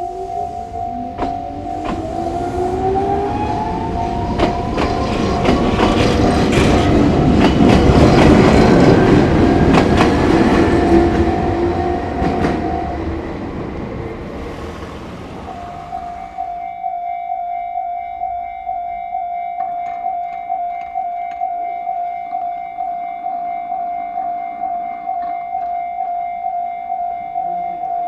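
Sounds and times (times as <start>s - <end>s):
level crossing warning bell: 0.0s - 14.1s, 15.4s - 28.0s
wheels clacking over rail joints: 1.1s - 16.6s.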